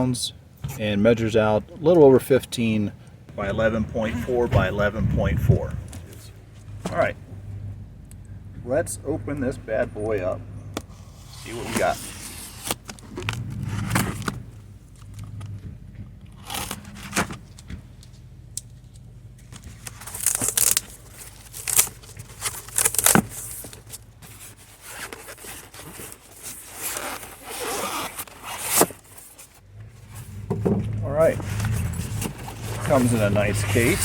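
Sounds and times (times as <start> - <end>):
cardboard scraping and crinkling: 10.9 - 15.4, 16.4 - 17.8, 19.5 - 34.0
tape tearing: 11.1 - 14.4, 16.4 - 17.6, 19.5 - 30.3, 31.4 - 34.0.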